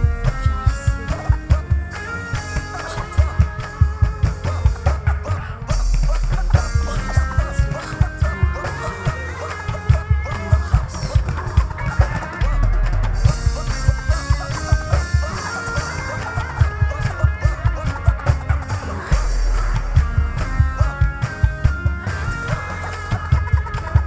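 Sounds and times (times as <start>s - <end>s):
live band playing slow song: 0.0s - 24.0s.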